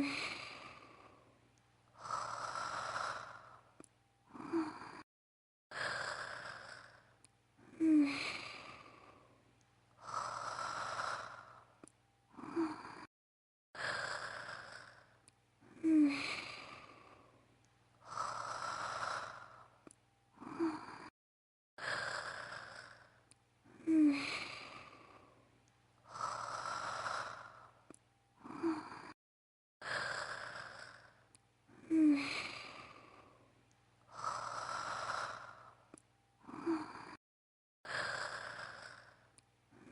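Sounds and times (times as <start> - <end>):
woman snoring: 0.0 - 1.3, 1.9 - 5.1, 5.7 - 9.4, 10.0 - 13.1, 13.8 - 17.4, 18.0 - 21.2, 21.8 - 25.4, 26.0 - 29.2, 29.8 - 37.2, 37.8 - 39.9.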